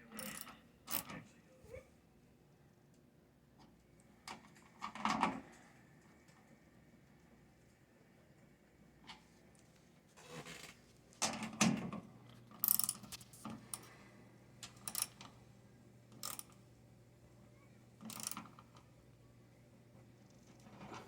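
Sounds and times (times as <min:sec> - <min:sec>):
wrench clicking and scraping on bolts: 0:14.7 - 0:15.2, 0:16.2 - 0:16.5, 0:18.0 - 0:18.5.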